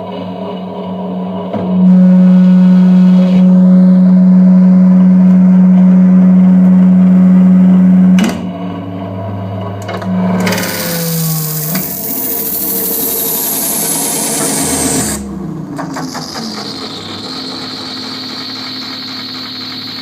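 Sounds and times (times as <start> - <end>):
low tape drone: 0.0 - 20.0
falling tone: 9.6 - 20.0.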